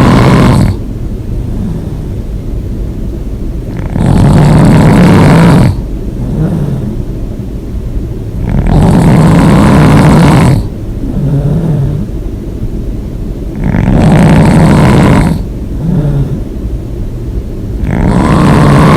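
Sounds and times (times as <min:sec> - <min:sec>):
person snoring loudly: 0:00.0 - 0:00.8, 0:03.7 - 0:07.0, 0:08.4 - 0:12.1, 0:13.6 - 0:16.4, 0:17.8 - 0:18.9
soft breath: 0:01.4 - 0:02.4, 0:05.7 - 0:07.1, 0:15.4 - 0:16.6.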